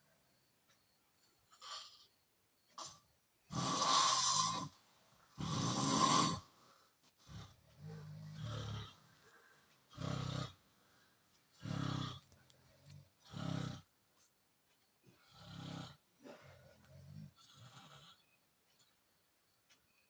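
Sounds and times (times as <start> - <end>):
loud rasping snoring: 2.8 - 6.5, 7.2 - 9.1, 9.9 - 10.7, 11.6 - 13.9, 15.1 - 18.4.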